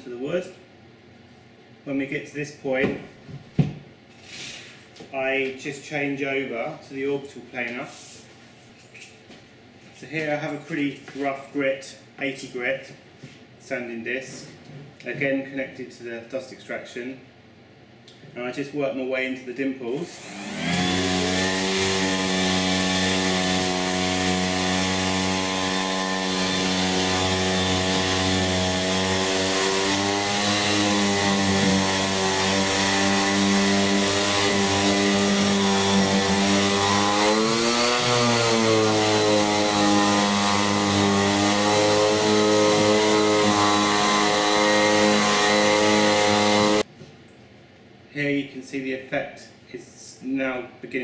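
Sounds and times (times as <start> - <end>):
orbital sander motor whine: 20.2 - 46.9.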